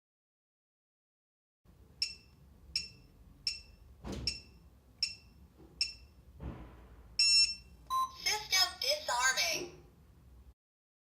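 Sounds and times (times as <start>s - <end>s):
keypad beeping: 2.0s - 6.1s, 7.2s - 8.2s.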